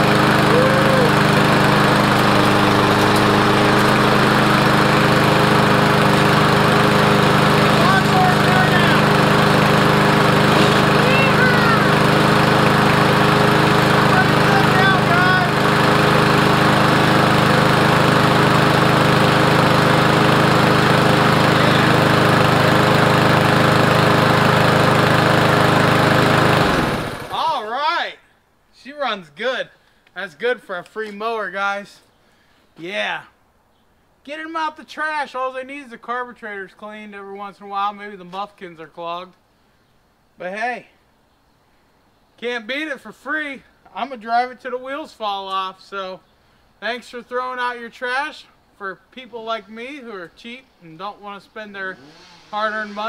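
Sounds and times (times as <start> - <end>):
lawn mower engine running: 0.0 - 27.7, 51.7 - 53.0.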